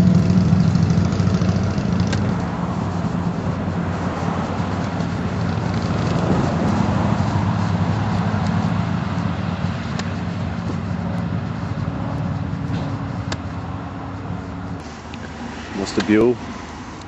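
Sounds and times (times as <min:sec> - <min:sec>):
motorcycle engine running: 0:00.0 - 0:14.8.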